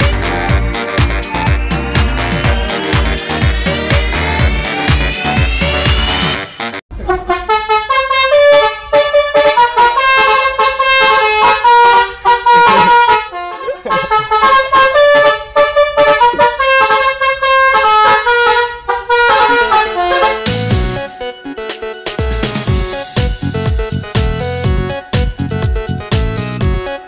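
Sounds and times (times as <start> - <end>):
bus horn playing a melody: 0.0 - 21.3.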